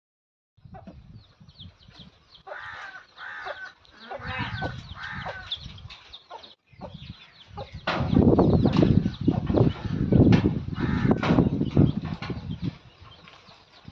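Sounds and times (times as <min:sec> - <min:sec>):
chicks peeping: 0:00.6 - 0:13.9
hens clucking: 0:02.4 - 0:12.2.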